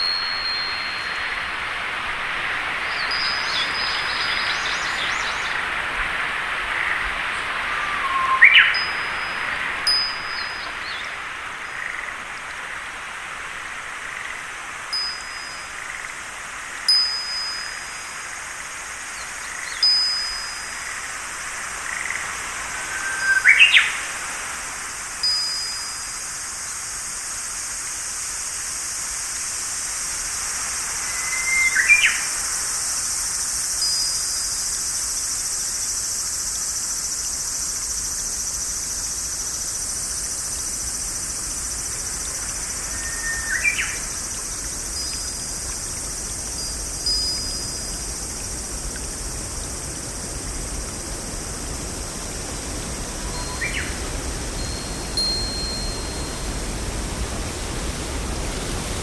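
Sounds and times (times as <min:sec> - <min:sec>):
high-pitched insect chorus: 0:00.0 - 0:59.0
bird calls sweeping upward: 0:07.7 - 0:09.4, 0:22.8 - 0:24.1, 0:31.0 - 0:32.7, 0:42.2 - 0:45.3
thin high bird whistles: 0:31.1 - 0:32.4, 0:42.8 - 0:44.1.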